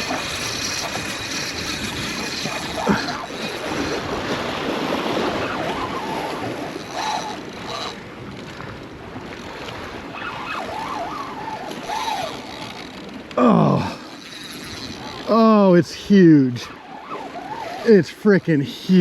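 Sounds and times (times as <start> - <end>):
wind on microphone: 0.0 - 12.9
surf washing against rocks: 0.0 - 19.0.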